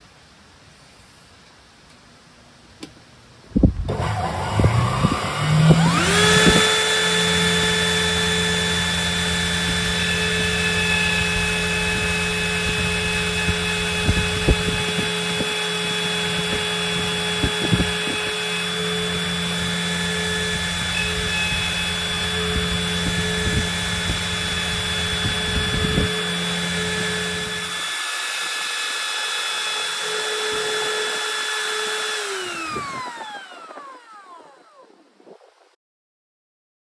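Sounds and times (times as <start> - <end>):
low machine hum: 3.5 - 28.0
trim router whining: 3.5 - 35.6
knocks from wood cutting: 3.8 - 28.9.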